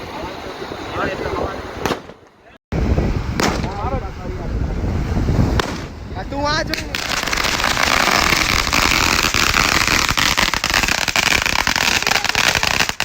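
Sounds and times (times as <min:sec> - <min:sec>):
firework sharp pops: 0:01.8 - 0:02.4, 0:03.4 - 0:03.9, 0:05.5 - 0:06.0, 0:06.7 - 0:13.0
firework hissing and crackling: 0:06.7 - 0:13.0.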